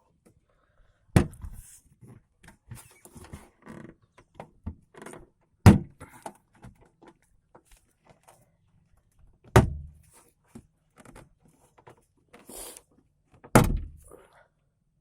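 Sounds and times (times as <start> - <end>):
door clicks and knocks: 13.5 - 14.0.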